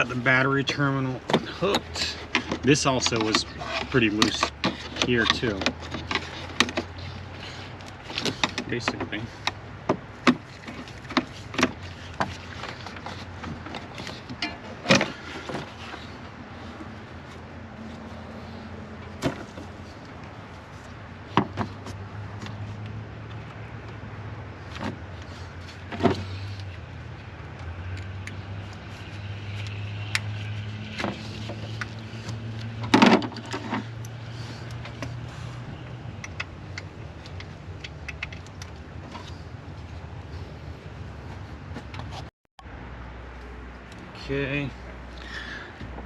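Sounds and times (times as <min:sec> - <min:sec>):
tools and metal parts clinking: 0:00.7 - 0:09.2, 0:10.6 - 0:16.0.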